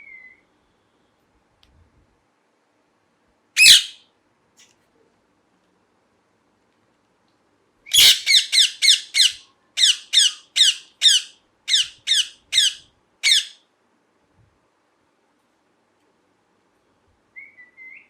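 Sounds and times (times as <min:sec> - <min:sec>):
parrot squawking harshly: 0:03.6 - 0:04.0, 0:07.9 - 0:13.6.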